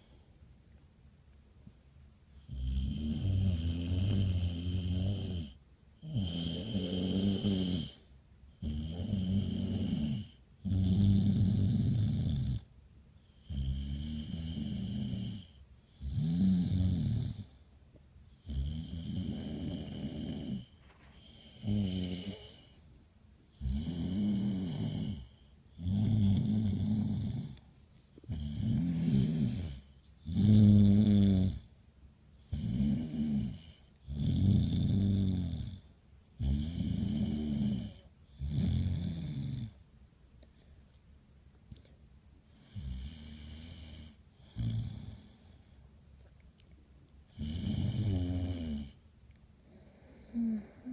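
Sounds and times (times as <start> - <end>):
loud snoring: 2.4 - 12.7, 13.3 - 17.6, 18.4 - 22.8, 23.6 - 27.6, 28.3 - 31.7, 32.4 - 39.8, 42.6 - 45.5, 47.3 - 49.0, 49.7 - 50.9.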